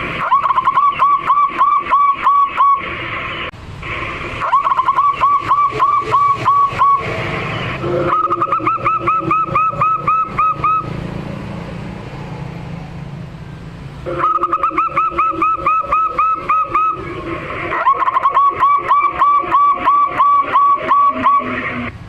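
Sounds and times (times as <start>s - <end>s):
dove calling: 0.2s - 2.9s, 4.4s - 11.0s, 14.1s - 21.9s.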